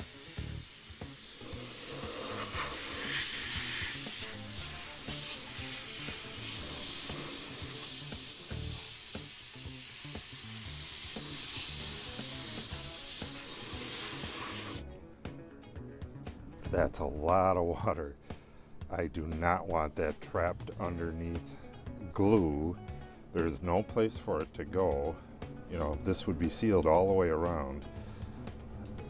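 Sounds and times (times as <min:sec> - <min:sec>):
compressed air blow gun hissing: 0:00.0 - 0:14.8
background music: 0:00.0 - 0:29.0.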